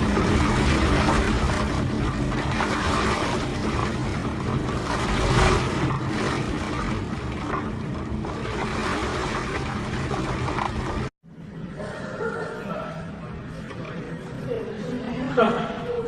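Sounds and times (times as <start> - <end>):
heavy low rumble: 0.0 - 11.1
water rushing: 0.0 - 11.1.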